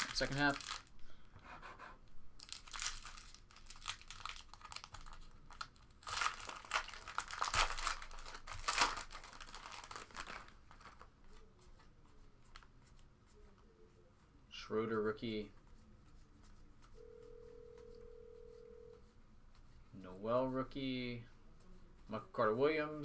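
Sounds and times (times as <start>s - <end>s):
card-pack wrappers crinkling and tearing: 0.0s - 0.9s, 2.4s - 11.1s.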